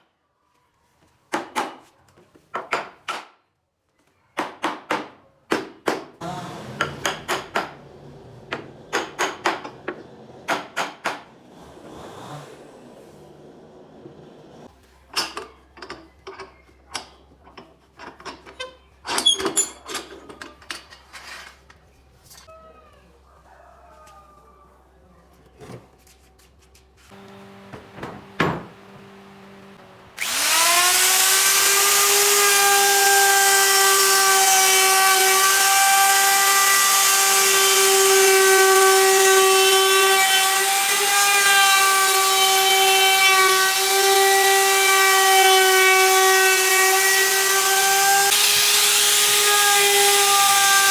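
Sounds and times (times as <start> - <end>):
tools and wood knocking: 6.8 - 7.8, 8.4 - 11.3, 15.1 - 22.5
power tool motor whine: 27.2 - 28.0, 28.8 - 32.9.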